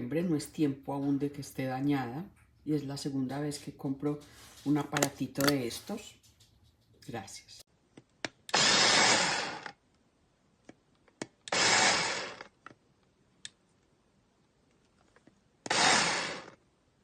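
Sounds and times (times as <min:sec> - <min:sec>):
food processor pulsing: 0:08.5 - 0:09.7, 0:11.5 - 0:12.5, 0:15.7 - 0:16.6.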